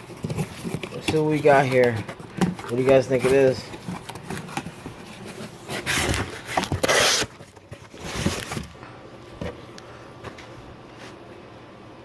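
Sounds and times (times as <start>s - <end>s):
packaging rustling and scraping: 0.0s - 8.8s.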